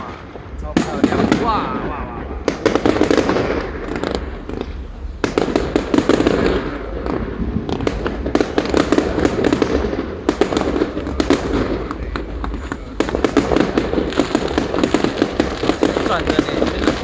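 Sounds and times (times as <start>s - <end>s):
fireworks cracking and popping: 0.0s - 17.0s.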